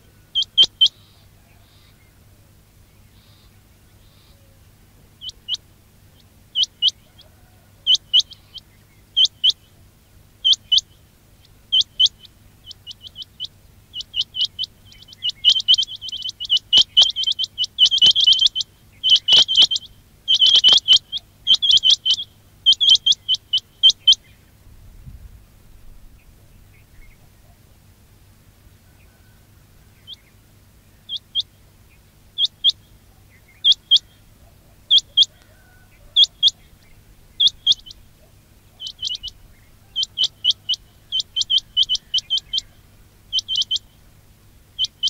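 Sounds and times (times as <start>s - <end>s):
quail calling: 0.0s - 2.2s, 3.1s - 24.5s, 28.7s - 45.0s.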